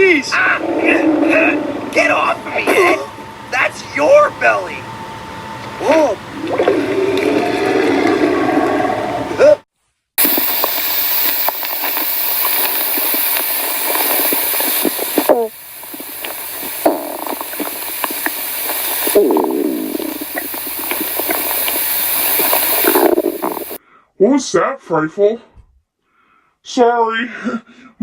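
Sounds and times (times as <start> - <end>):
cartoon stomach growl: 0.4 - 3.0, 6.4 - 9.6, 13.7 - 23.8.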